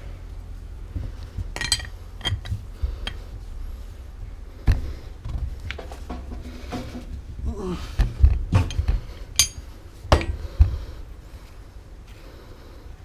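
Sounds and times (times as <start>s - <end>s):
metallic clinks of tools: 9.4s - 9.6s.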